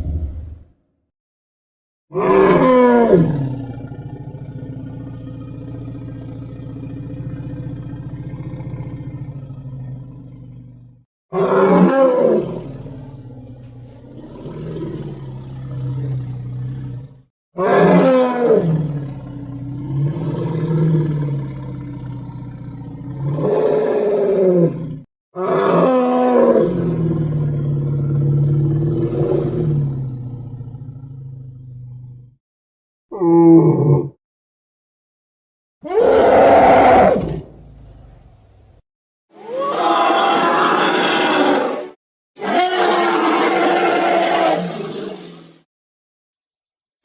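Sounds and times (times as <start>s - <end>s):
monster roar: 2.1s - 4.2s, 11.3s - 12.9s, 17.6s - 21.6s, 23.1s - 30.1s, 33.1s - 34.2s, 35.8s - 38.0s, 39.4s - 45.4s
monster growl: 35.9s - 38.0s.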